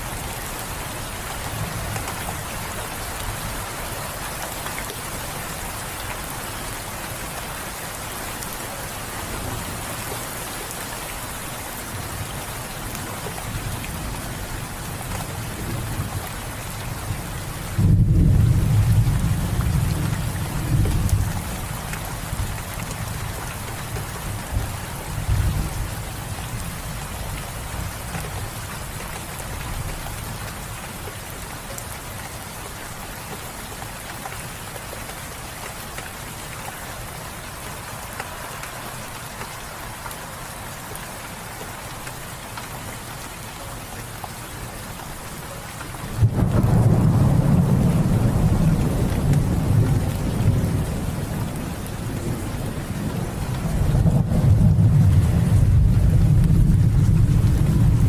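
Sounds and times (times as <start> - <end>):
steady rain: 0.0 - 58.0
deep rumble of thunder: 17.6 - 21.6, 46.2 - 58.0.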